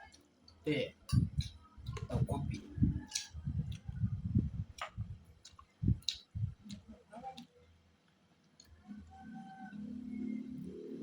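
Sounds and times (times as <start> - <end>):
person chewing with mouth smacks: 1.4 - 4.0, 4.8 - 7.5.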